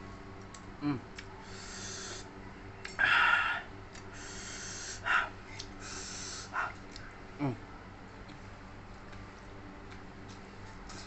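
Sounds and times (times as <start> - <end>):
man breathing hard: 1.4 - 2.3, 3.0 - 6.8.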